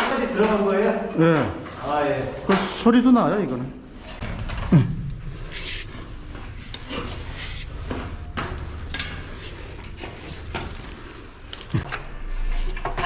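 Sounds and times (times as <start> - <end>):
scraping and rubbing strokes: 5.2 - 11.5.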